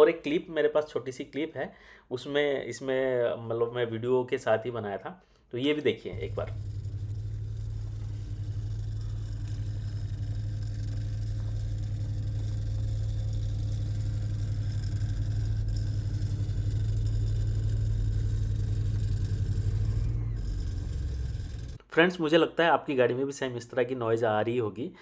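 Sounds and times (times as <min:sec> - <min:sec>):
car engine drone: 0:06.1 - 0:21.8
interior trim buzzing rattle: 0:06.1 - 0:21.8.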